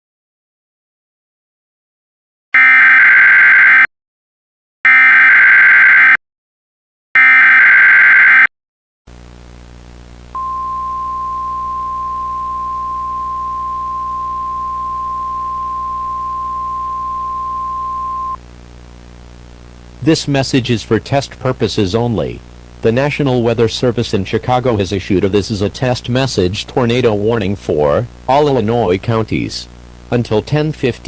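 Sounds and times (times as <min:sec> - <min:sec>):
low hum with hiss: 0:09.1 - 0:31.0
data bursts: 0:10.4 - 0:18.4.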